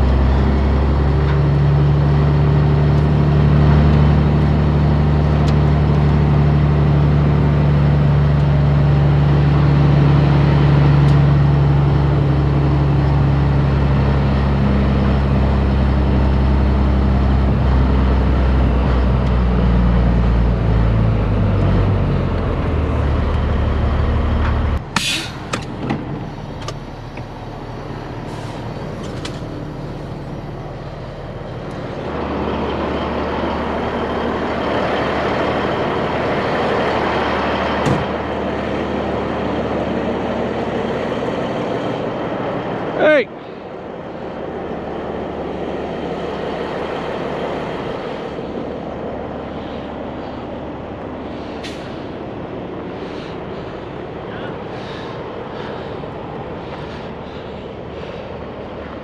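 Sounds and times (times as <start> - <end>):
diesel truck engine running: 0.0 - 59.0
air brakes hissing: 24.9 - 25.6, 28.2 - 29.2, 51.2 - 58.8.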